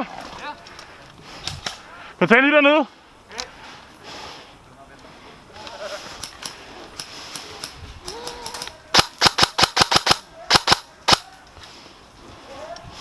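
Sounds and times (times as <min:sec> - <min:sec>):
airsoft gun shots: 0:08.9 - 0:11.2.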